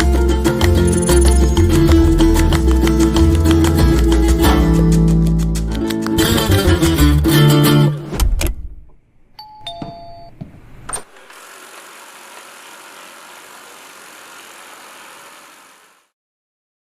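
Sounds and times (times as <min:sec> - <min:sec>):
background music: 0:00.0 - 0:08.2
two-note electronic chime: 0:00.8 - 0:01.8.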